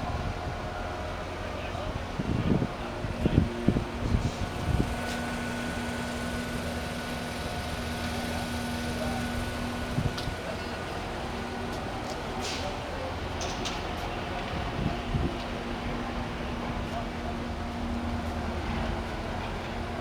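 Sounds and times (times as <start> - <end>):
diesel engine running: 2.9 - 13.5
steady hum: 3.2 - 11.9.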